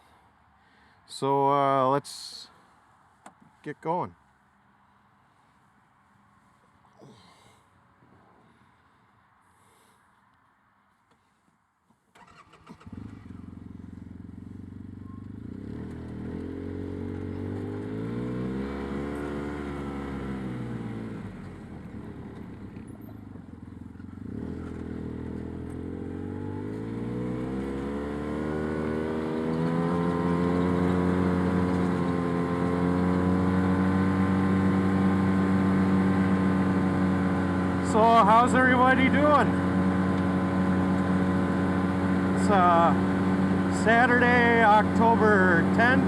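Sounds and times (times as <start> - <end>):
utility vehicle engine revving: 12.2 - 21.5, 24.2 - 46.0.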